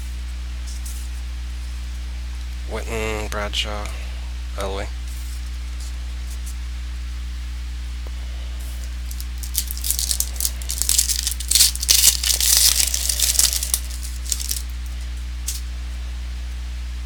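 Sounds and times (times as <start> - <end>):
cards rustling: 8.8 - 14.8
card pack wrapper crinkling: 8.9 - 14.8.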